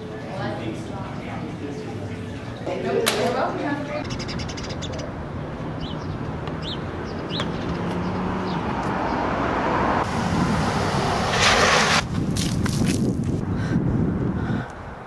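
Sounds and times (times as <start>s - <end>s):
passing vehicle: 4.0s - 12.3s.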